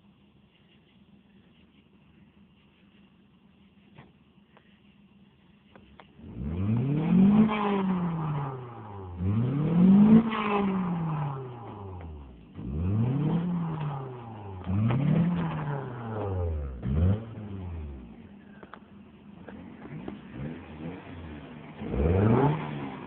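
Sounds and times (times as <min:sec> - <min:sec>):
car engine revving: 0:06.1 - 0:18.4, 0:19.1 - 0:23.0.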